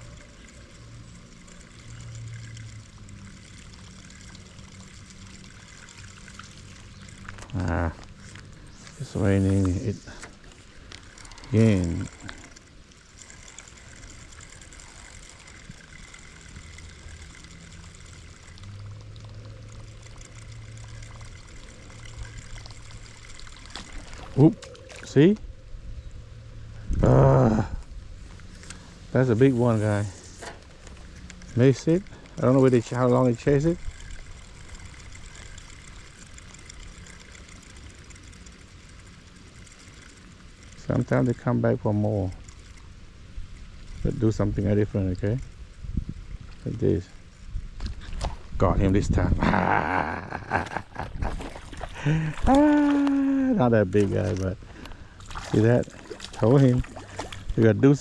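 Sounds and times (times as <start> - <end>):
rain falling on lake: 0.0 - 25.1, 49.6 - 57.7
low steady rumble: 0.0 - 58.0
steady low hum: 0.0 - 58.0.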